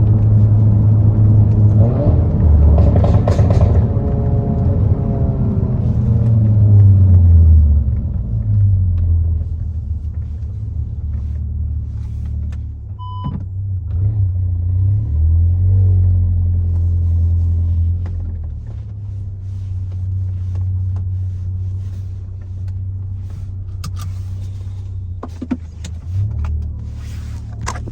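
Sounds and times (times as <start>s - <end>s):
car exhaust deep rumble: 0.0s - 27.9s
short beep: 13.0s - 13.4s.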